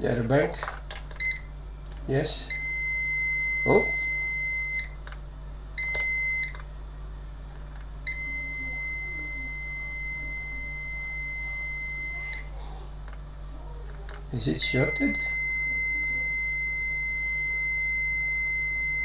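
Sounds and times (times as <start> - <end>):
multimeter continuity beeps: 0.6 - 1.5, 2.4 - 5.2, 5.8 - 6.7, 8.0 - 12.5, 14.4 - 19.0.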